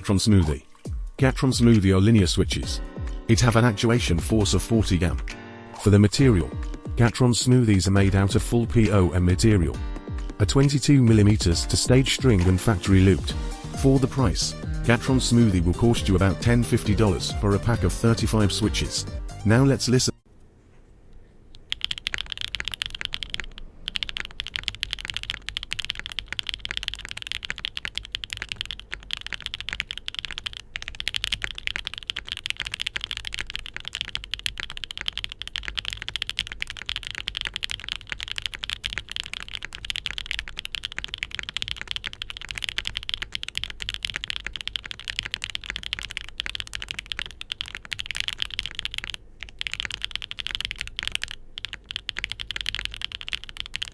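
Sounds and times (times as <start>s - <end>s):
mechanical keyboard typing: 15.0s - 18.8s, 21.6s - 53.9s.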